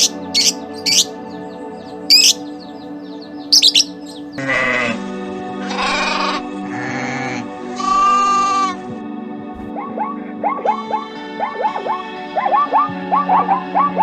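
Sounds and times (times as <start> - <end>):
short high bird chirps: 0.0 - 1.1, 2.1 - 2.4, 3.5 - 4.3
background music: 0.0 - 14.0
goat bleating: 4.4 - 8.8.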